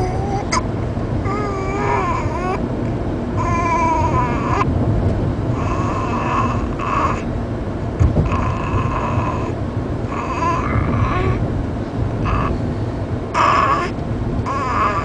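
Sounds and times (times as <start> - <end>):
baby whimpering: 0.0 - 2.6, 3.4 - 4.7, 5.6 - 7.3, 8.2 - 11.4, 12.2 - 12.6, 13.4 - 15.0
steady low rumble: 0.0 - 15.0.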